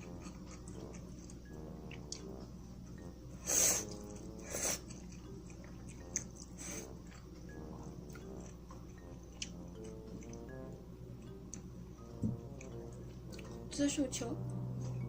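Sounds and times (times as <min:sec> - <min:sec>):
close-miked chewing: 0:00.0 - 0:02.4, 0:03.7 - 0:11.8, 0:12.4 - 0:13.6.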